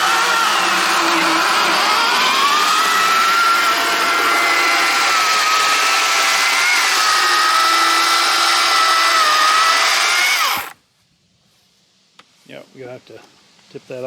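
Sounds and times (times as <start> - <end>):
chainsaw running: 0.0 - 10.8.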